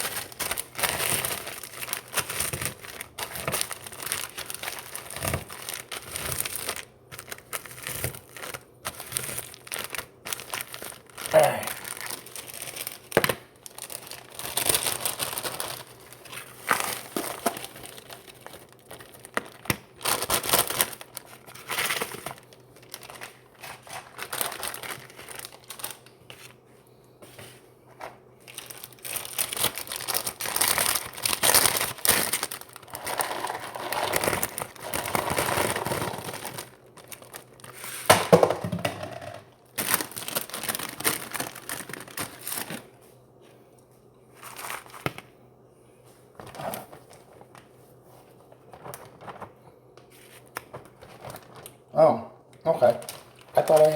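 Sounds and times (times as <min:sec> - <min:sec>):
snack bag crinkling: 0:00.0 - 0:26.6, 0:28.4 - 0:43.0, 0:50.4 - 0:51.8, 0:52.8 - 0:53.9.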